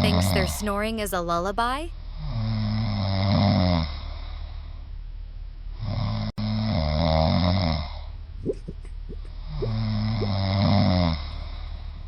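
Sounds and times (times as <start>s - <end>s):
dog snoring: 2.1s - 4.3s, 5.8s - 8.0s, 9.6s - 11.7s.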